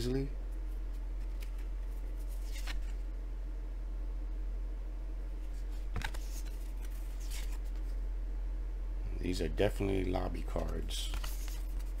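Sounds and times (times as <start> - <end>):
steady low hum: 0.0 - 12.0
cardboard cards rustling: 1.2 - 3.0, 5.4 - 7.9, 10.5 - 12.0.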